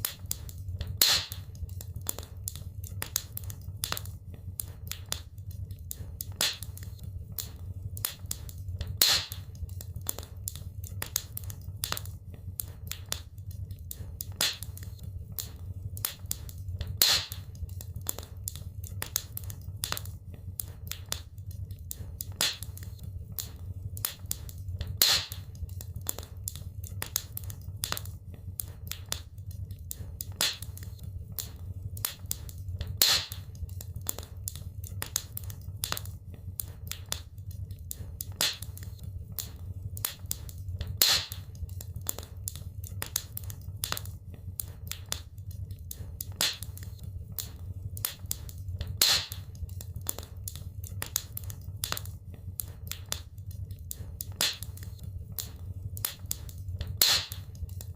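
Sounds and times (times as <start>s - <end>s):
low steady rumble: 0.0s - 57.9s
wood fire crackling: 0.0s - 57.9s.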